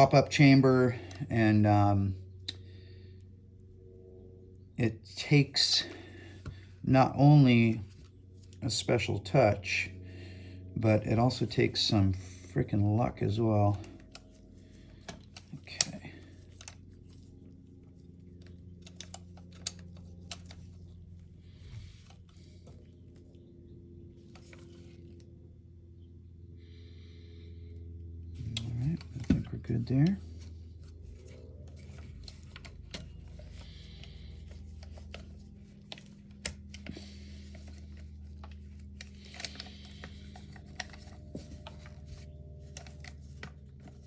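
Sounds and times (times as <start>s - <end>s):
steady low hum: 0.0s - 44.0s
small parts clicking and tapping: 18.4s - 20.8s, 31.2s - 44.0s.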